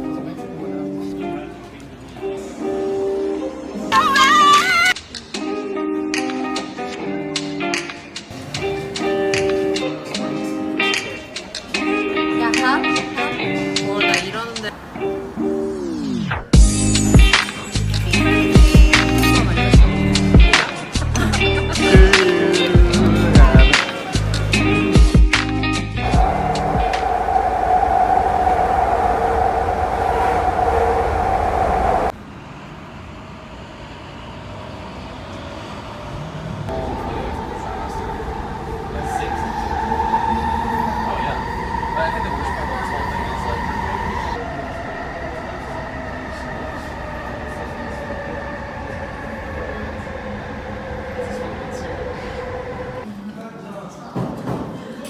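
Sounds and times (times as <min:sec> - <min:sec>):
train whine falling in pitch: 0:26.0 - 0:32.2
train running noise with whine: 0:26.0 - 0:53.1.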